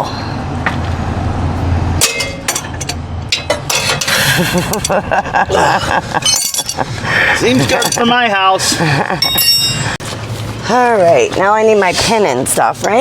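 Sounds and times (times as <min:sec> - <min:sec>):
low steady hum: 0:00.0 - 0:13.0
metal tools clinking: 0:02.0 - 0:05.0, 0:06.1 - 0:08.3, 0:09.2 - 0:10.0.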